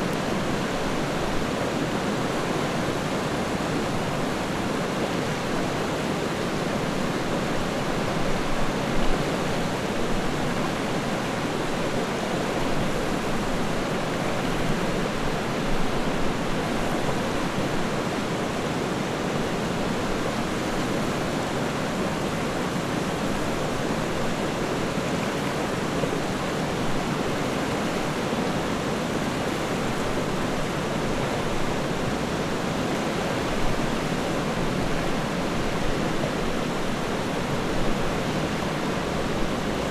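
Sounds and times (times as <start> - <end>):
river rushing over rocks: 20.6 - 39.9.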